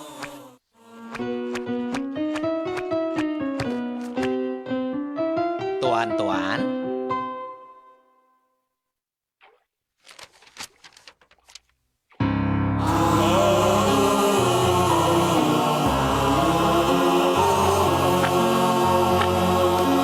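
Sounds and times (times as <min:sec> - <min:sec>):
choir-like music: 0:00.0 - 0:01.6, 0:12.6 - 0:20.0.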